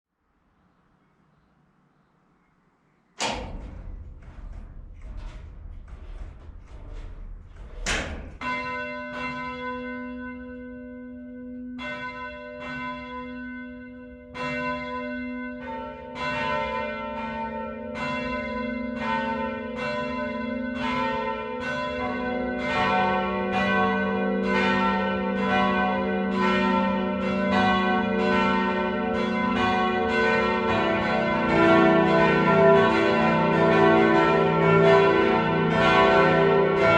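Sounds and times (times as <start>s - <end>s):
low rumble: 3.2s - 8.4s
knocks: 3.2s - 8.6s
church bells ringing: 7.8s - 36.9s.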